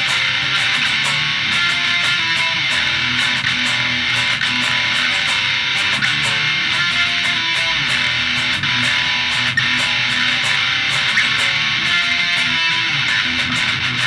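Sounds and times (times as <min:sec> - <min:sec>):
electric guitar and bass music: 0:00.0 - 0:14.0.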